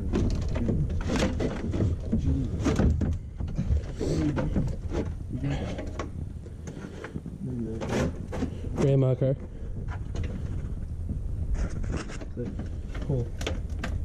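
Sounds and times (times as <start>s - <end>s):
men talking: 7.3s - 8.1s, 8.7s - 9.6s.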